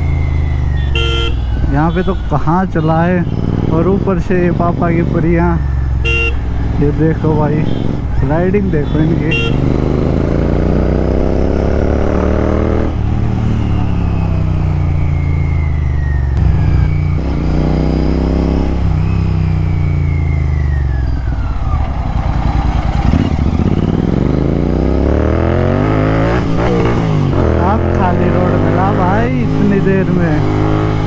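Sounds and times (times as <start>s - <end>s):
motorcycle engine revving: 0.0s - 31.0s
engine crackle: 12.5s - 25.2s.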